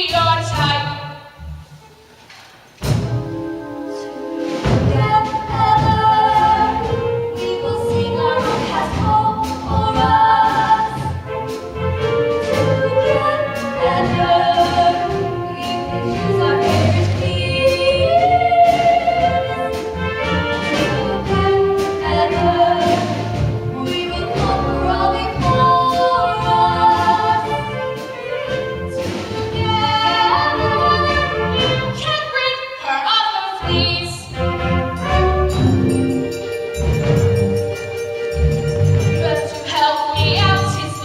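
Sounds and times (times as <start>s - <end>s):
instrumental accompaniment: 0.0s - 32.8s, 33.6s - 41.0s
voices singing together: 20.7s - 28.6s.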